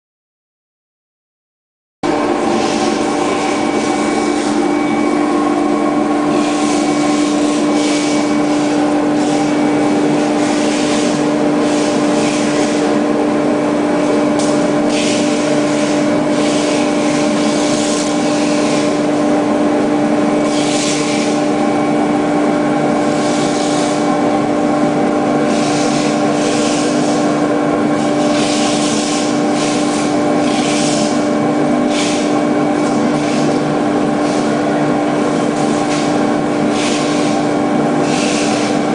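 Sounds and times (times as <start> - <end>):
steady machine hum: 2.0 - 38.9
hissing swishes of blade: 31.9 - 32.4.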